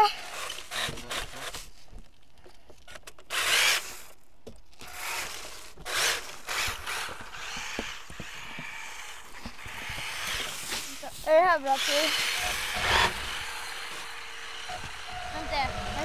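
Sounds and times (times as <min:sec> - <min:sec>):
whirring scraping bursts: 0:00.0 - 0:01.8, 0:03.0 - 0:04.2, 0:04.8 - 0:16.0
toy car mechanical rattling: 0:00.0 - 0:01.9, 0:02.8 - 0:16.0.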